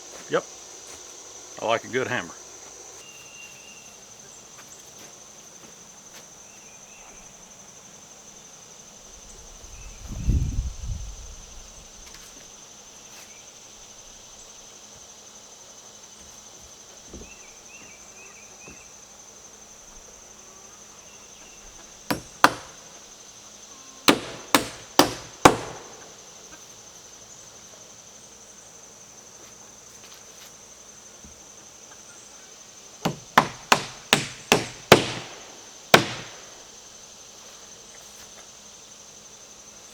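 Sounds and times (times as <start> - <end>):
high insect buzz: 0.0 - 39.9
hammer driving nails into wood: 22.1 - 22.9, 24.1 - 26.1, 33.0 - 36.6.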